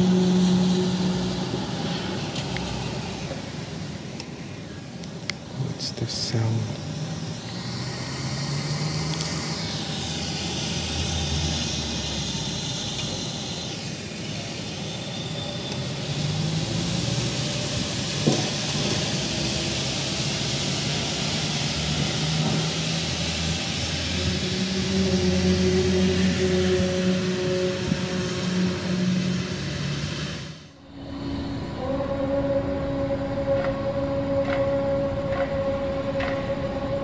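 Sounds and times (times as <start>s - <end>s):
low rumbling drone: 0.0s - 37.0s
hiss: 5.7s - 30.7s.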